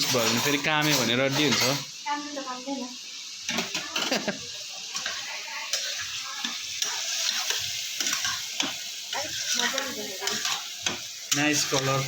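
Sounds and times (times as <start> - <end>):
spoon stirring and scraping: 0.0 - 1.9, 3.5 - 12.0
chicken sizzling in a pan: 0.0 - 12.0.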